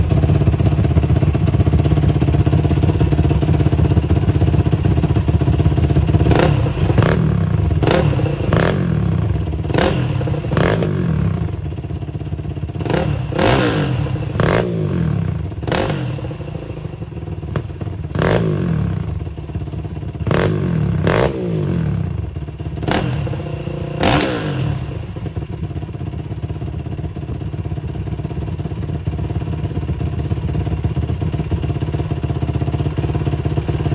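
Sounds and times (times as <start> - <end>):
motorcycle engine revving: 0.0 - 26.3.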